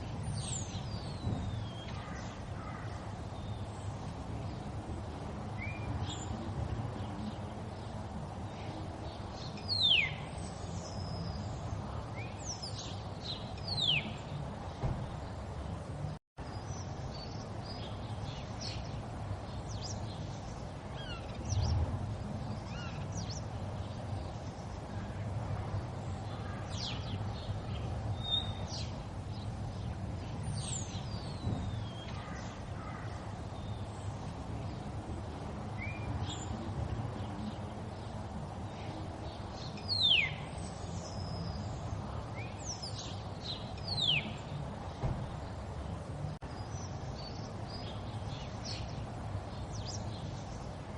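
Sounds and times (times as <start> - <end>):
small birds chirping: 0.0 - 50.9.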